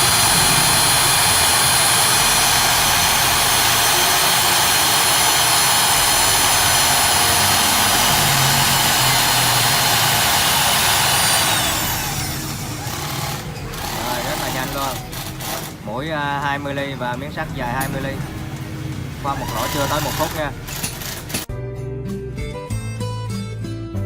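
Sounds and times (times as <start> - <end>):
motor spinning down: 0.0 - 15.8, 19.3 - 21.4
drill motor whining: 0.0 - 16.0, 19.2 - 21.5.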